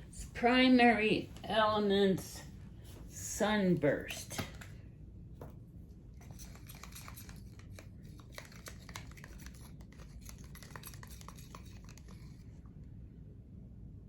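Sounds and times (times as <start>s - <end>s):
low room hum: 0.0s - 14.0s
small clicks and scratchy rubbing: 6.2s - 12.6s.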